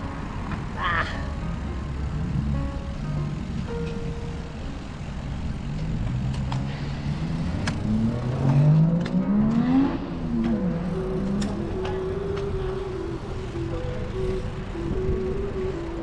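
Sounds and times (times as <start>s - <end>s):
vehicle engine accelerating past: 5.6s - 16.0s.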